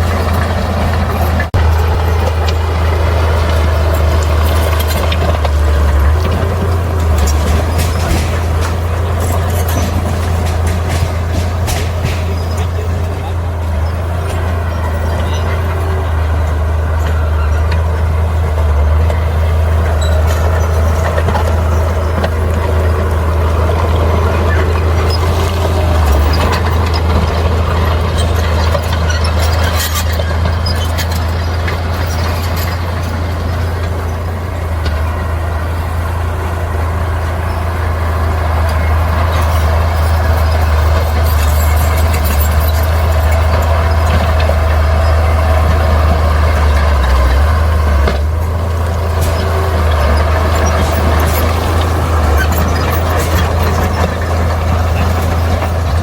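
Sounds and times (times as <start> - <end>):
bulldozer diesel engine: 0.0 - 56.0
light metal clanks: 3.5 - 16.0.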